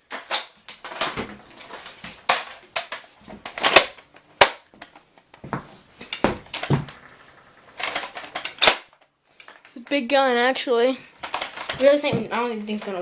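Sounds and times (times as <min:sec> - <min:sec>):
plastic toy blaster clicking: 0:07.7 - 0:09.6.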